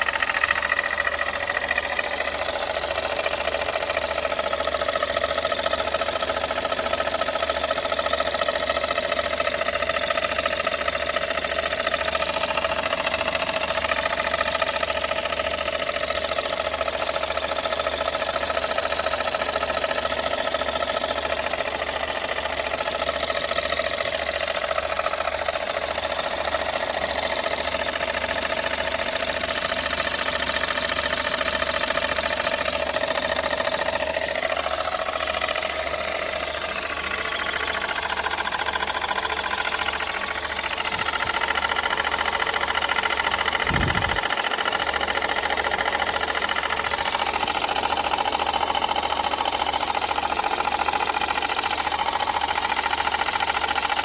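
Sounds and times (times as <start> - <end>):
car engine running: 0.0 - 54.0
engine knocking and grinding: 0.0 - 54.0.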